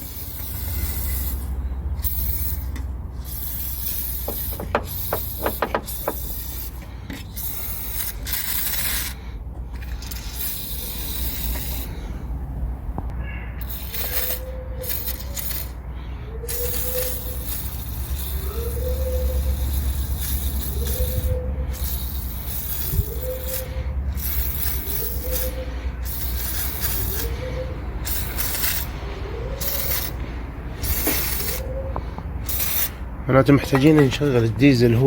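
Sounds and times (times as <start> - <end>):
spray hissing: 0.0 - 9.3, 16.5 - 31.7
steady low hum: 0.0 - 35.0.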